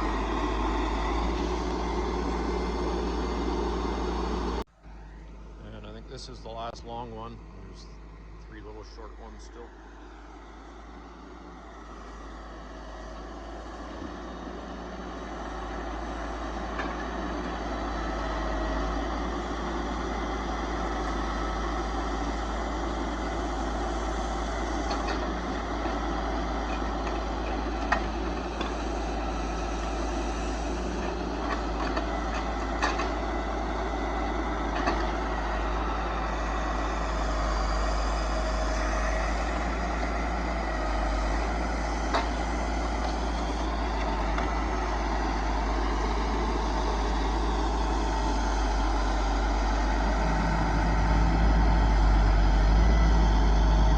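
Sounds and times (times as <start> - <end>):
truck diesel engine running: 0.0 - 53.9.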